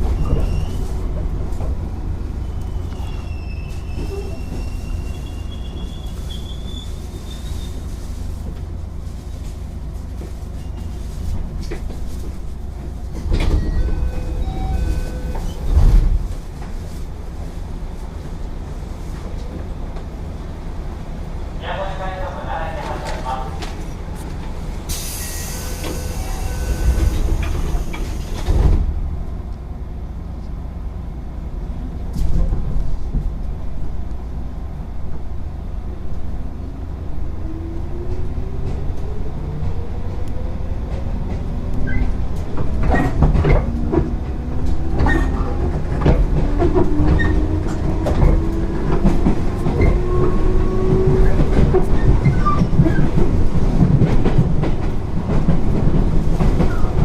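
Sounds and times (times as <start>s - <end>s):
air hiss: 24.9s - 28.4s.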